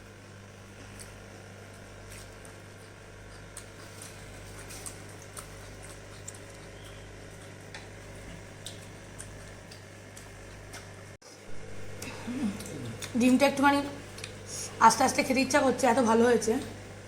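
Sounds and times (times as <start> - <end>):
low electrical hum: 0.0 - 17.0
faint chewing: 0.7 - 11.1, 11.9 - 13.4.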